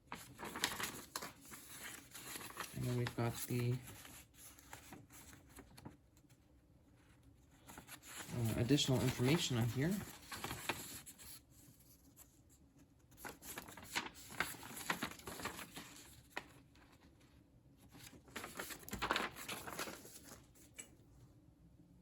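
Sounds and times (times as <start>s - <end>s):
paper and packaging rustling: 0.0s - 6.4s, 7.0s - 12.3s, 13.1s - 21.0s.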